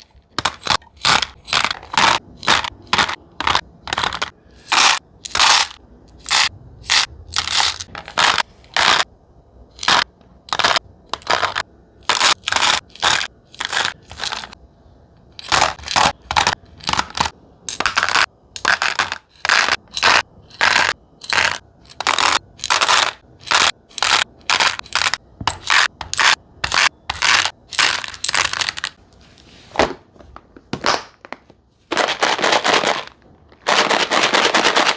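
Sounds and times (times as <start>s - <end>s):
candies clattering into plastic box: 0.0s - 9.0s, 15.4s - 29.0s, 30.7s - 34.9s.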